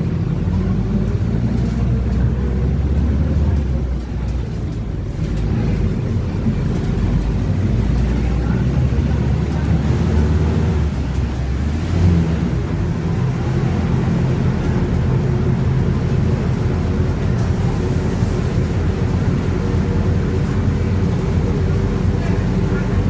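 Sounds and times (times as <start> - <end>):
bus diesel engine running: 0.0 - 23.0.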